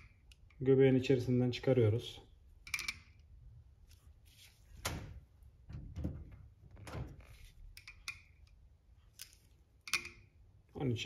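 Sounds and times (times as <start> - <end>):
metal bearing balls clinking: 2.6 - 3.3, 7.7 - 10.4.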